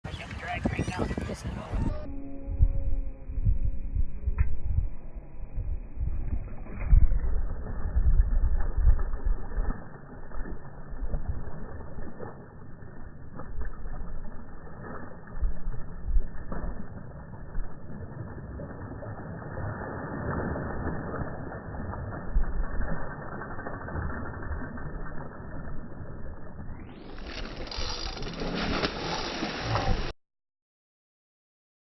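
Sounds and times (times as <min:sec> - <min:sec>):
fishing reel whirring and ratcheting: 0:27.0 - 0:30.1.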